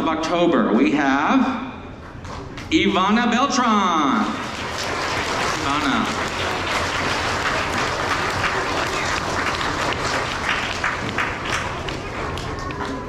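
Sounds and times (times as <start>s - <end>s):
hands clapping: 4.2s - 13.0s
children's voices: 11.4s - 13.0s.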